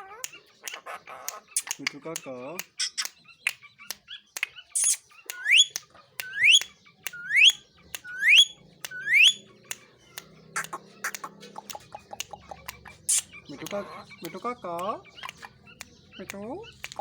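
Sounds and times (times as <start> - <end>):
parakeet clicks and chatter: 0.0 - 17.0
parakeet rising whistles: 7.2 - 9.4.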